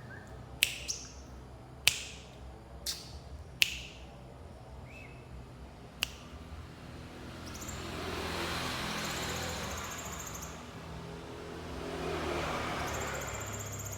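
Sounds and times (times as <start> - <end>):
steady low hum: 0.0 - 7.9
vehicle passing: 6.3 - 13.9.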